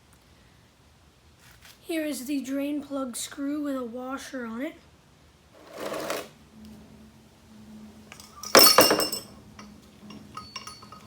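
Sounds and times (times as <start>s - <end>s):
metal parts clattering: 5.6s - 6.3s, 8.1s - 9.4s
light metallic clinks: 8.1s - 11.0s.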